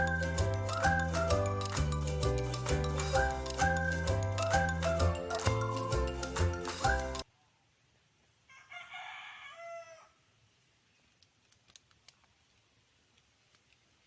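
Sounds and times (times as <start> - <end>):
background music: 0.0 - 7.2
rooster crowing: 8.5 - 10.3
faint clicks: 11.1 - 13.9.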